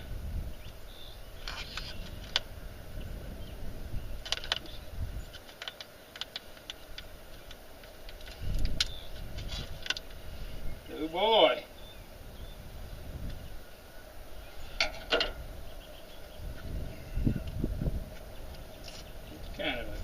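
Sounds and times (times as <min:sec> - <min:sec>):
light clicks and rustles: 0:04.2 - 0:10.2
low rumbles: 0:06.0 - 0:20.0.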